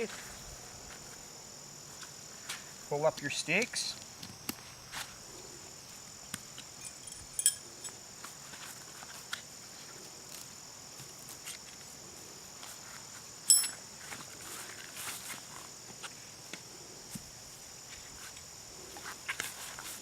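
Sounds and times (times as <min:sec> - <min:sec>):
insects chirring: 0:00.0 - 0:20.0
ringing metallic clink: 0:06.8 - 0:07.7, 0:13.5 - 0:13.8
metal stakes clicking and knocking: 0:06.8 - 0:08.0, 0:13.5 - 0:13.8.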